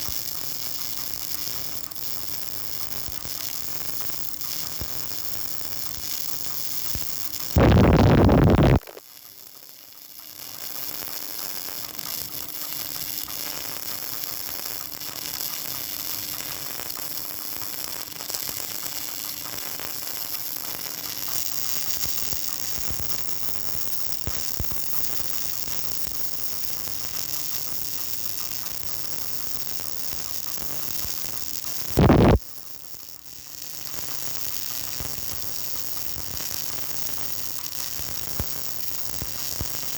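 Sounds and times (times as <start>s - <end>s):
welding arc crackling and hissing: 0.0s - 9.0s, 10.1s - 39.9s
loud bursts of noise: 7.6s - 9.0s.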